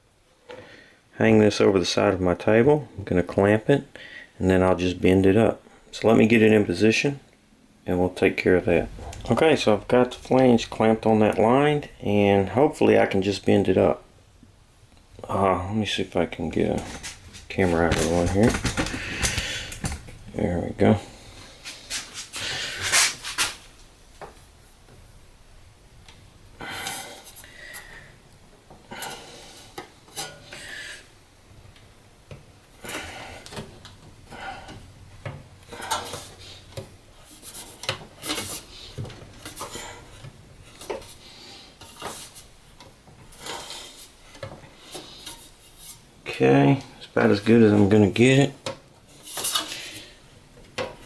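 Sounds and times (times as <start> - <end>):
metal sheet clinking and scraping: 16.3 - 23.7.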